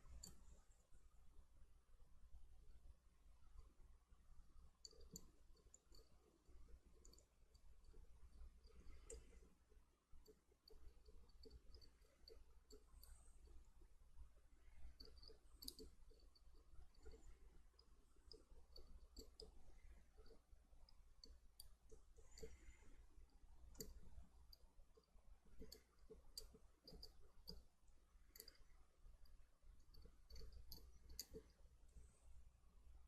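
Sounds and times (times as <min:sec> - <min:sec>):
small tools clicking and tapping: 0:14.6 - 0:22.9, 0:23.7 - 0:31.6.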